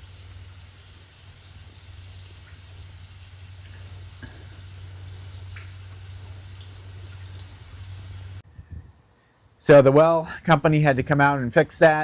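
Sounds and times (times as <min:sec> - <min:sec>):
water hissing from leak: 0:00.0 - 0:08.4.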